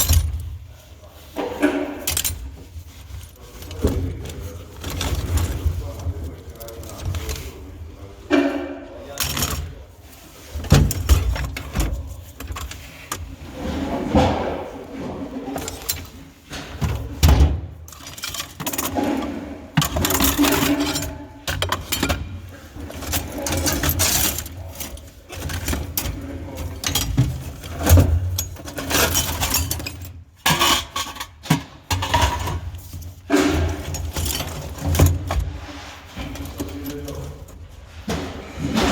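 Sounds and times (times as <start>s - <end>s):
objects clattering and rustling: 0.0s - 38.9s.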